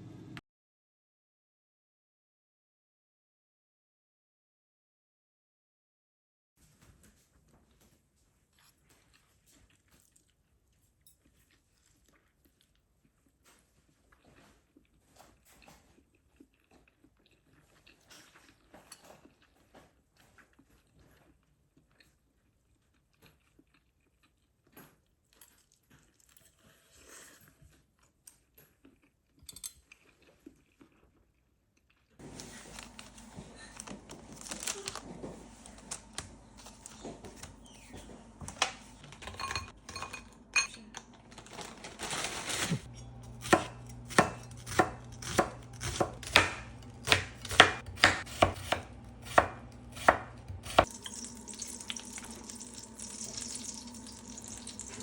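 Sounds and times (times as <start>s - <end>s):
knife chopping on cutting board: 43.3s - 50.9s.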